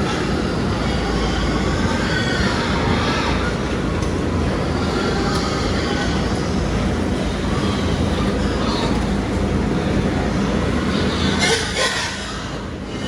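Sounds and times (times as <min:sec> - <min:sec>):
loud mechanical rumble: 0:00.0 - 0:13.0.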